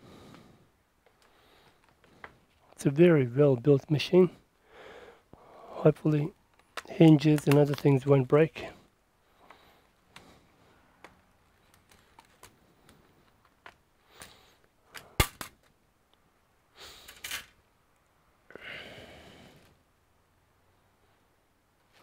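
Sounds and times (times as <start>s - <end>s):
light clicks and taps: 6.3s - 8.1s.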